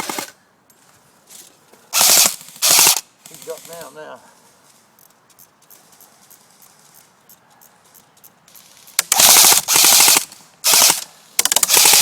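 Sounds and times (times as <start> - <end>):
airsoft rifle bursts: 1.9 - 3.9, 8.6 - 12.0.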